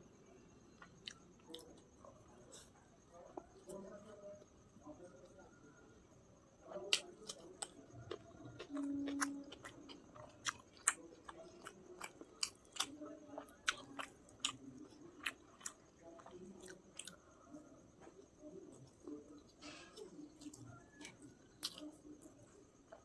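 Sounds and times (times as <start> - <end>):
close-up chewing and mouth sounds: 0.7 - 4.6, 6.6 - 23.0.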